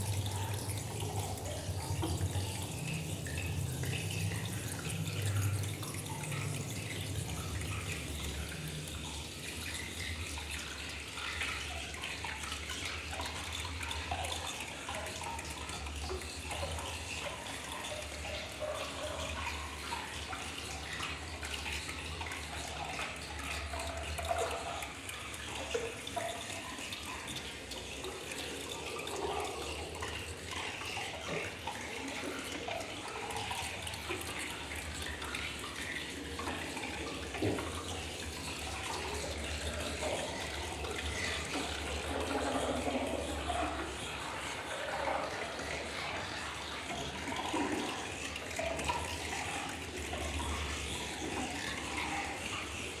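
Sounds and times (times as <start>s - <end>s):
rushing water-like noise: 0.0s - 53.0s.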